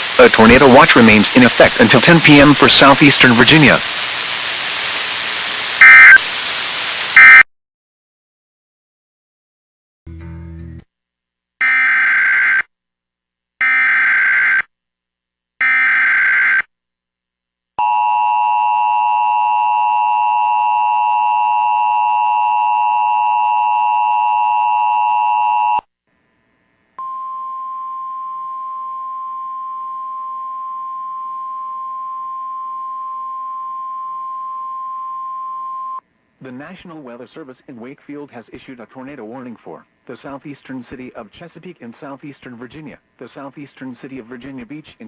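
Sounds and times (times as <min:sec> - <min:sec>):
digital header data bursts: 0:00.0 - 0:04.0, 0:05.8 - 0:06.3, 0:07.2 - 0:07.4
single-pitch warning alarm tone: 0:05.8 - 0:06.2, 0:07.2 - 0:07.4, 0:11.6 - 0:12.6, 0:13.6 - 0:14.6, 0:15.6 - 0:16.6, 0:17.8 - 0:25.8, 0:27.0 - 0:36.0
two-tone attention signal: 0:05.8 - 0:06.2, 0:07.2 - 0:07.4, 0:27.0 - 0:36.0.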